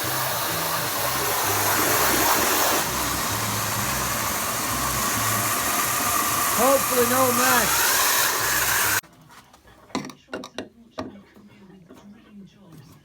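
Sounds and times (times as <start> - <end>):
wet vacuum cleaner running: 0.0 - 9.0.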